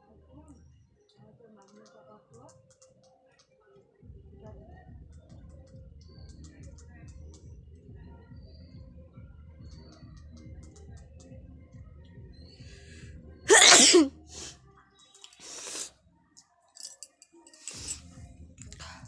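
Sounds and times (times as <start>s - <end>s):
woman sneezing: 13.5s - 14.5s.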